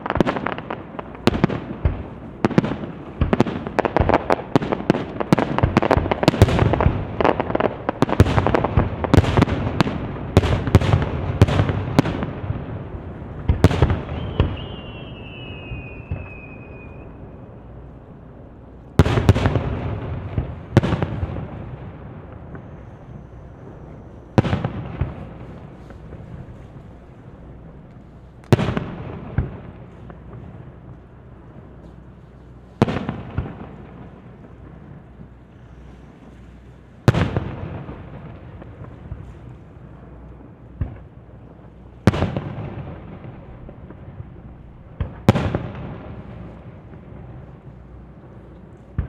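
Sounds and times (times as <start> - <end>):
falling firework whistle: 13.6 - 17.4, 22.5 - 24.8
heavy echoing booms: 18.9 - 27.9.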